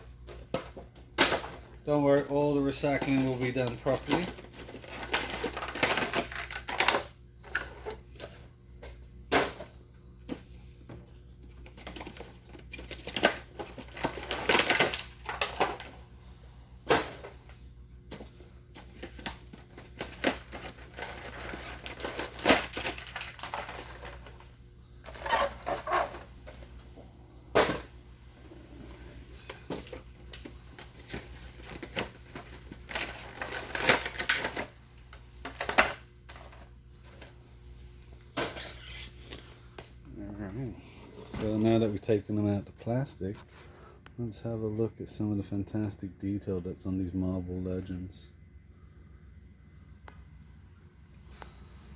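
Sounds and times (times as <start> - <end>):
wrappers crinkling: 1.8 - 7.8, 11.5 - 16.0, 18.7 - 26.6, 29.4 - 37.4
plastic packaging clicks and snaps: 11.6 - 15.9, 19.0 - 24.5, 32.8 - 34.7.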